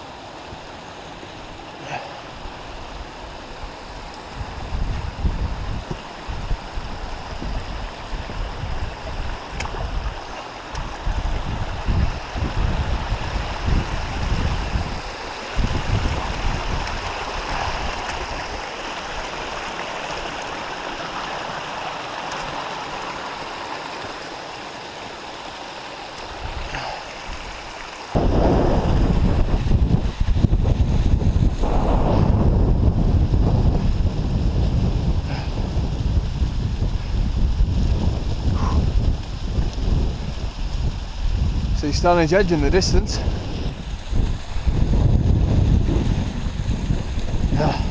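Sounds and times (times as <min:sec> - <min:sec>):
wind buffeting microphone: 0:02.7 - 0:18.6, 0:26.4 - 0:47.9.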